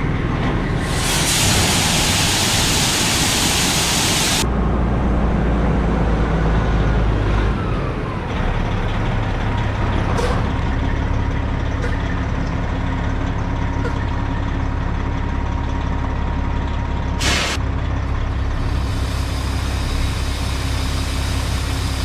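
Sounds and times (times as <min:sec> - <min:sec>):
heavy diesel engine running: 0:00.0 - 0:22.0
loud hiss: 0:00.8 - 0:04.5, 0:17.2 - 0:17.6, 0:18.6 - 0:22.0.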